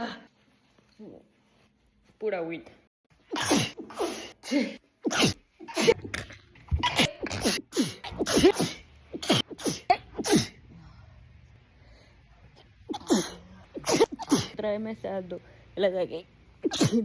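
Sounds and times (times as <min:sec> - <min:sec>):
woman sneezing rapidly: 0:03.3 - 0:06.1, 0:06.7 - 0:10.6, 0:12.9 - 0:14.6, 0:16.6 - 0:17.0.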